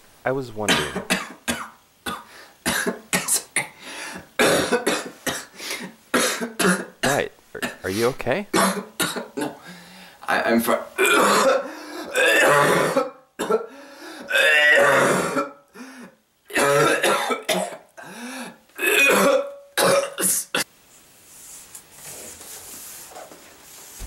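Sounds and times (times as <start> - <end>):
person coughing hard: 0.7 - 3.8, 4.4 - 7.8, 8.5 - 9.6, 10.7 - 15.6, 16.5 - 18.1, 18.8 - 20.7
wheezy breaths: 3.8 - 4.3, 9.6 - 10.2, 11.6 - 12.1, 13.7 - 14.3, 15.7 - 16.2, 18.0 - 18.7.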